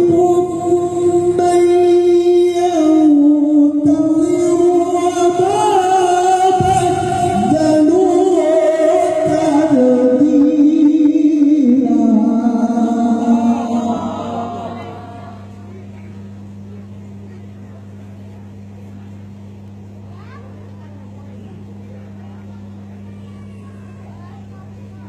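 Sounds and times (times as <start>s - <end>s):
man reciting melodically: 0.0s - 15.6s.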